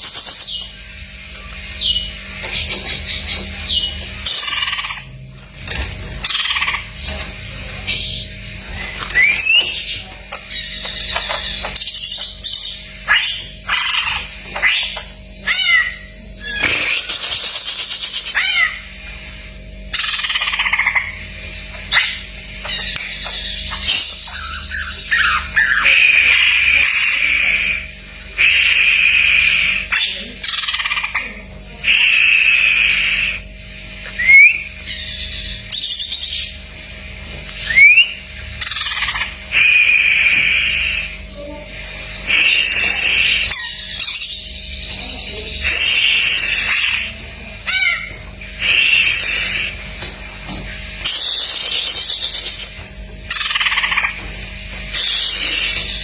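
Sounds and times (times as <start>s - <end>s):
bird singing whistles and chatters: 8.8s - 18.7s, 22.1s - 36.5s, 37.6s - 41.5s.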